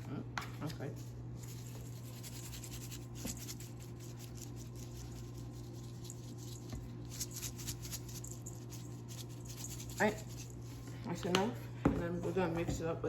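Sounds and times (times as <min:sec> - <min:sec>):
steady low hum: 0:00.0 - 0:13.0
seasoning shaken onto potatoes: 0:01.5 - 0:10.8.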